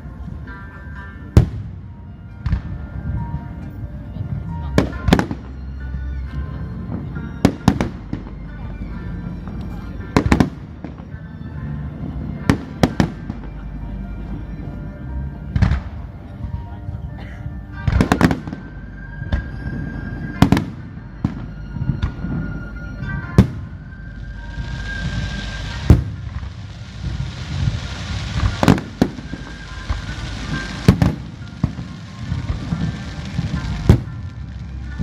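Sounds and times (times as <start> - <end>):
music: 0.0 - 35.0
fireworks bangs: 10.2 - 11.2, 17.8 - 18.7, 19.3 - 35.0
fireworks crackling hiss: 23.4 - 35.0.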